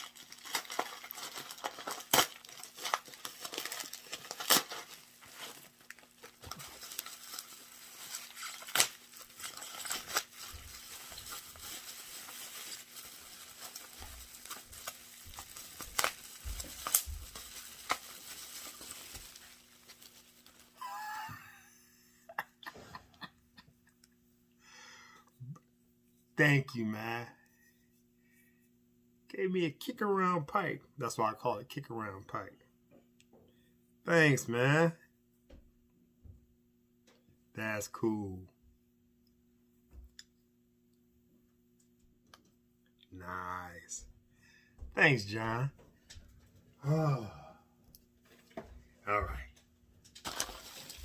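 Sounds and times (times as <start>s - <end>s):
packing material rustling: 0.0s - 20.8s, 50.2s - 51.0s
tape tearing: 0.0s - 20.8s, 50.2s - 51.0s
knife cutting packing tape: 0.2s - 5.0s, 8.2s - 10.3s.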